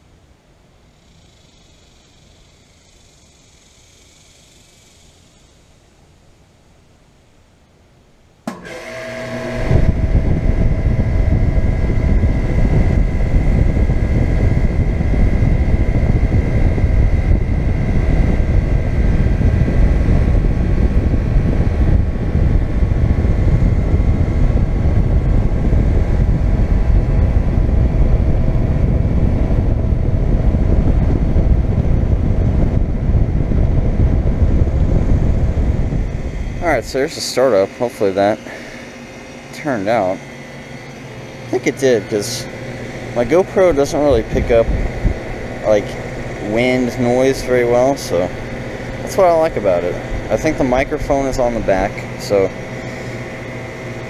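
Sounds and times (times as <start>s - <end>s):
air conditioner compressor hum: 0.0s - 54.0s
air conditioner switch click: 8.5s - 9.0s.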